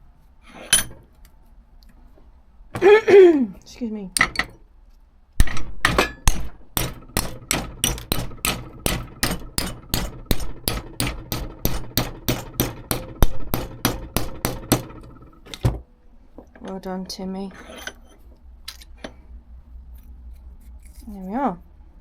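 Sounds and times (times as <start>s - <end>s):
mallet beating sheet metal: 5.4s - 15.0s.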